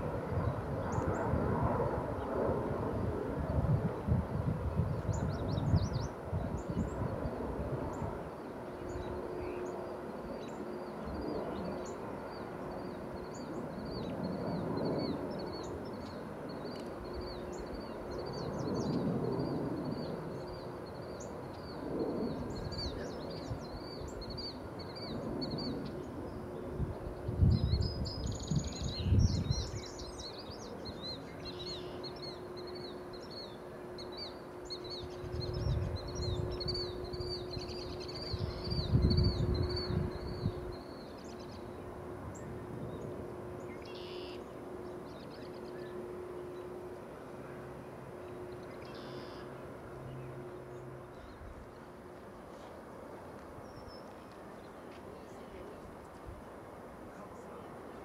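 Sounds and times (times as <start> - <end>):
wind buffeting microphone: 0.0 - 31.2, 34.0 - 43.8
faint steady hum: 0.0 - 58.0.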